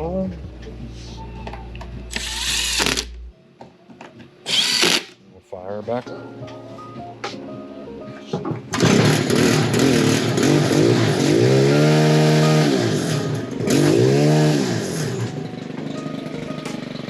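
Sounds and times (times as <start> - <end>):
string trimmer engine revving: 8.8 - 15.3.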